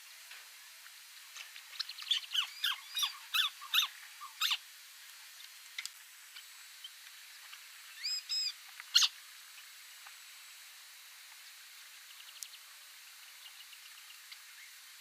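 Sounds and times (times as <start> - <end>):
crake calling: 1.7 - 4.6.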